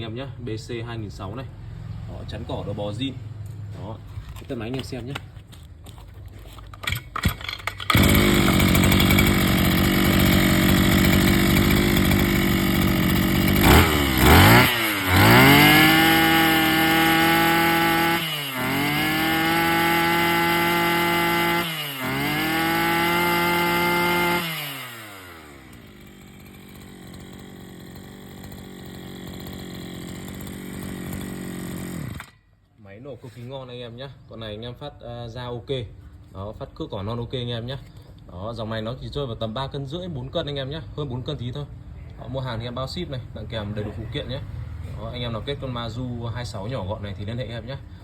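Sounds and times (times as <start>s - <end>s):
brush cutter engine idling and revving: 6.8s - 32.4s.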